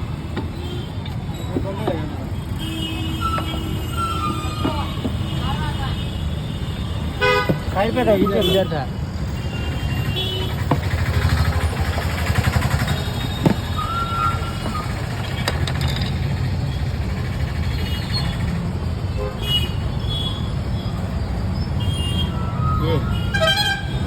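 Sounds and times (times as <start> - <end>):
road traffic rumble: 0.0 - 24.0
car horn toot: 7.0 - 10.6, 21.8 - 24.0.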